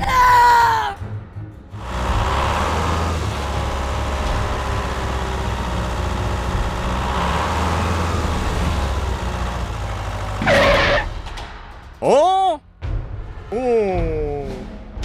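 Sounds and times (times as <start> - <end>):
heavy vehicle engine droning: 1.6 - 11.4.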